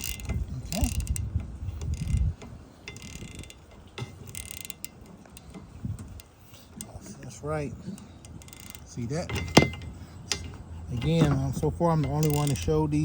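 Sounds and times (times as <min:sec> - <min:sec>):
ratcheting wrench clicking: 0:00.0 - 0:07.4, 0:08.0 - 0:13.0
heavy low clunk: 0:09.3 - 0:11.7.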